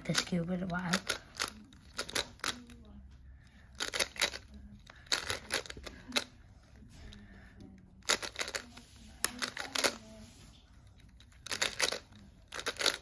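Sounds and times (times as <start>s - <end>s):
plastic puzzle cube clicking: 0.1s - 2.8s, 3.8s - 6.3s, 8.0s - 8.6s, 11.2s - 13.0s.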